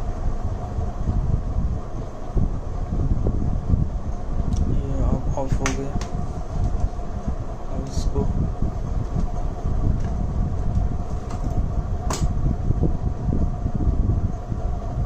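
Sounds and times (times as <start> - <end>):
faint hum: 0.0 - 15.0
low rumbling background noise: 0.0 - 15.0
sharp click: 12.1 - 12.4.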